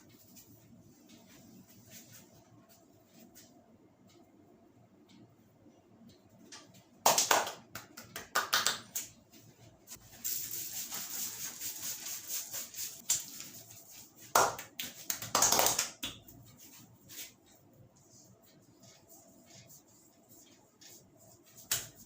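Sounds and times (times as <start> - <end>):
hands rubbing hair and skin: 0.1 - 3.5, 9.3 - 15.4, 16.0 - 22.0
hands slapping head: 21.6 - 22.0.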